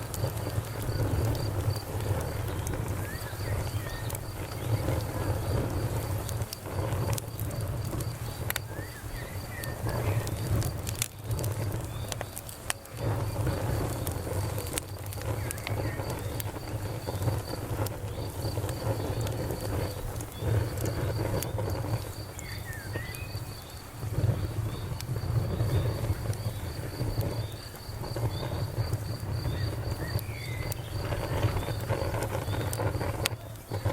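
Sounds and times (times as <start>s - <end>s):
campfire wood crackling: 0.0s - 33.9s
crickets chirping: 0.0s - 33.9s
fire popping: 0.0s - 33.9s.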